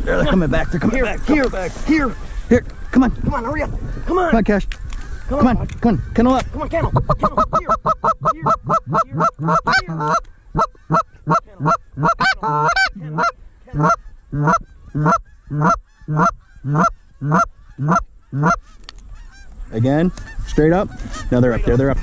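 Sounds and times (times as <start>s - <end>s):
goose call clucks and honks: 5.1s - 22.0s.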